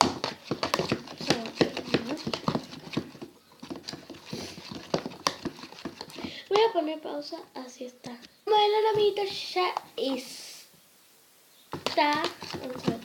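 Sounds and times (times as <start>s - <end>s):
spoon stirring slime: 0.0s - 7.0s, 11.7s - 13.0s.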